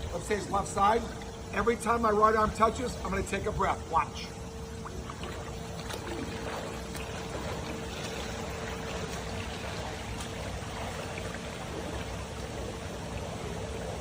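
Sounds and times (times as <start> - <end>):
steady hum: 0.0 - 14.0
water splashing from swimming: 4.7 - 14.0.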